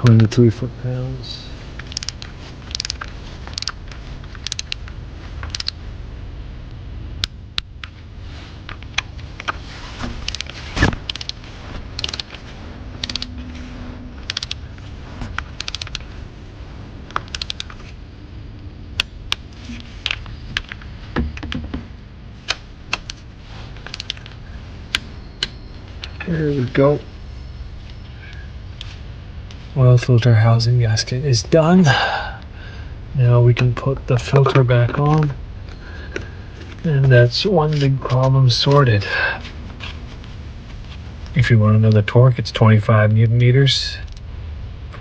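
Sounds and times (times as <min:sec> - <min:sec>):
ratchet wrench clicking: 0:02.7 - 0:03.7, 0:12.0 - 0:12.2, 0:13.0 - 0:13.3.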